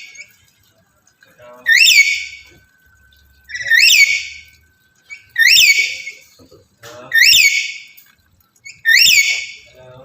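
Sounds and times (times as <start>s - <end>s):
parrot high whistled calls: 1.7s - 2.5s, 3.5s - 4.5s, 5.1s - 6.3s, 7.1s - 8.0s, 8.6s - 9.7s.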